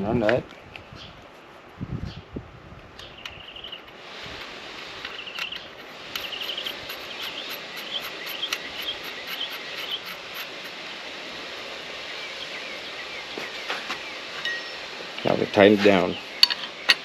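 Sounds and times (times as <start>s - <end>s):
steady background hiss: 0.0s - 17.0s
fine high ticking: 3.0s - 10.8s
insects chirping: 3.0s - 17.0s.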